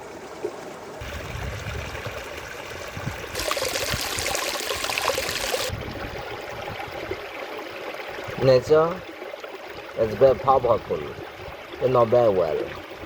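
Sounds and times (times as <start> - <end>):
stream water rushing: 0.0 - 10.4.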